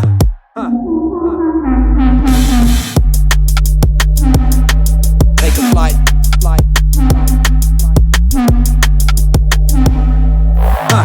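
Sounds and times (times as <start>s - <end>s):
electronic hip-hop beat: 0.0s - 0.7s, 1.8s - 11.0s
deep bass: 0.0s - 11.0s
gliding synth melody: 0.8s - 10.8s
person rapping: 5.2s - 8.8s, 10.6s - 11.0s.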